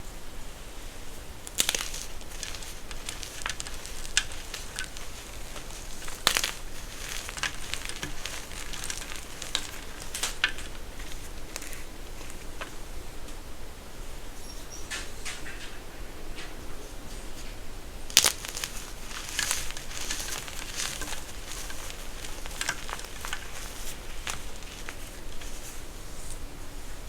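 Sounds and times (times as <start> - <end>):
crunchy material crackling: 0.8 - 13.4, 18.0 - 26.4.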